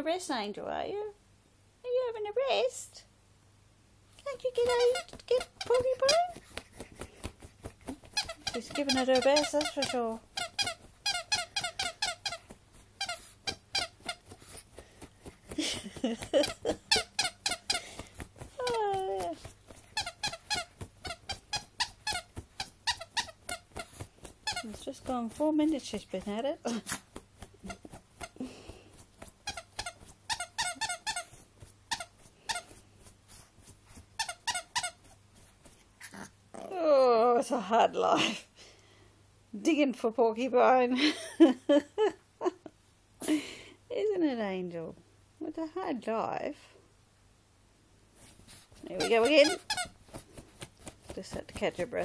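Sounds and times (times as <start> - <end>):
squeaky toy squeaking: 4.5 - 6.4, 7.8 - 14.4, 16.4 - 17.8, 20.0 - 25.1, 29.4 - 32.8, 34.2 - 35.2, 48.8 - 50.2
dog pawing at sheet: 4.5 - 35.9, 48.1 - 52.0.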